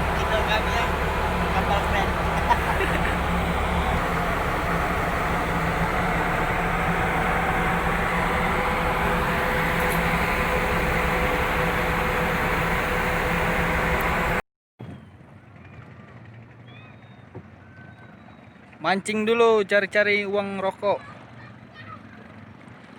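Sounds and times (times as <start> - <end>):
boat engine droning: 0.0 - 14.4.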